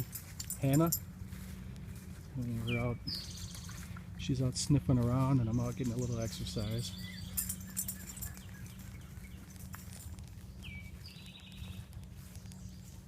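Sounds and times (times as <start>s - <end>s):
footsteps on woodland path: 0.0s - 13.0s
bird calling: 1.8s - 4.2s, 5.3s - 9.7s.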